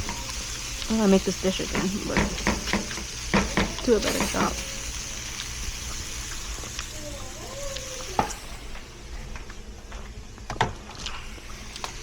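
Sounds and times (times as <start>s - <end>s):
meat sizzling in frying pan: 0.0s - 9.1s
utensil clacking on pan: 1.6s - 4.6s.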